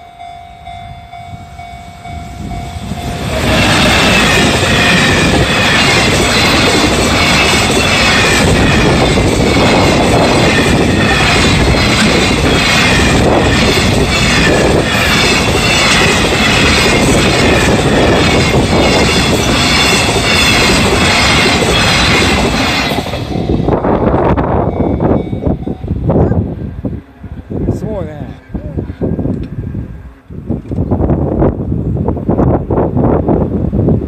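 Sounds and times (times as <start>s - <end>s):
high wavering ringing: 0.0s - 23.8s
freight wagons rolling on rails: 2.5s - 25.9s.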